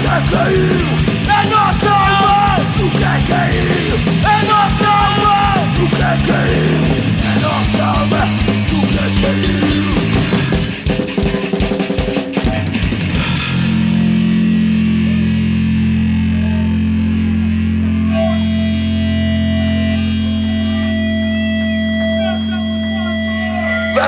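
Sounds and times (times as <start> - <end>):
drum kit: 0.0 - 21.6
distorted electric guitars: 0.0 - 24.0
high feedback tone: 17.9 - 24.0.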